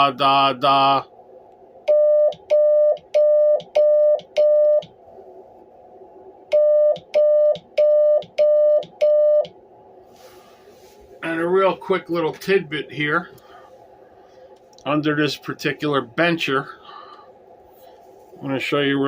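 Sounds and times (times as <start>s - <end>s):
morse code beeps: 1.9s - 4.9s, 6.5s - 9.5s.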